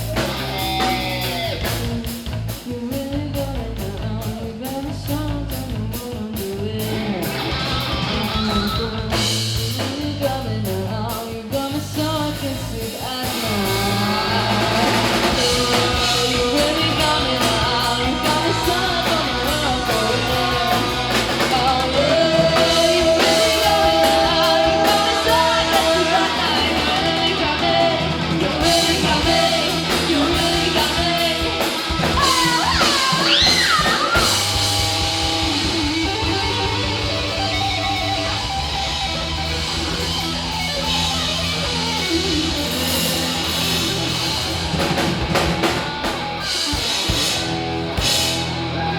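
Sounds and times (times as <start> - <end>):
rock band playing: 0.0 - 48.9
person singing: 8.1 - 38.7.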